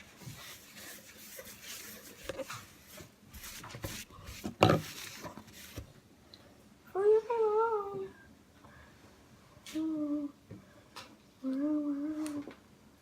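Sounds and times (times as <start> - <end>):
rubbing and scraping handling noise: 0.0 - 6.0.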